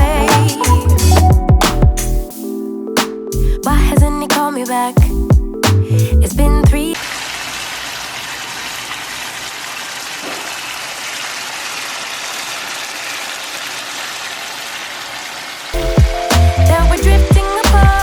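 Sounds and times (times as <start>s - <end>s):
background song: 0.0s - 7.0s, 15.8s - 18.0s
water running from a tap: 7.0s - 16.2s.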